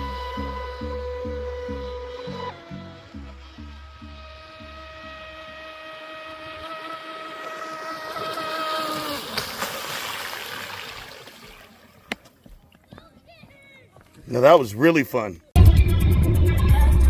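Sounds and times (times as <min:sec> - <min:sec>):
electric motor whine: 0:00.0 - 0:09.5
water hissing: 0:05.2 - 0:11.8.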